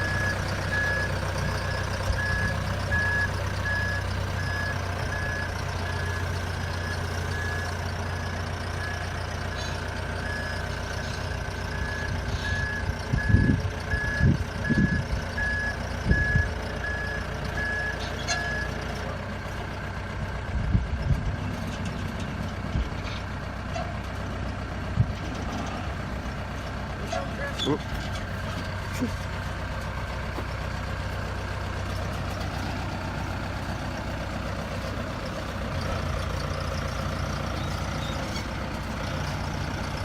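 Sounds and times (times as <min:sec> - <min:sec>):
reversing alarm beeping: 0:00.0 - 0:07.9, 0:10.2 - 0:18.8
engine running: 0:00.0 - 0:40.0.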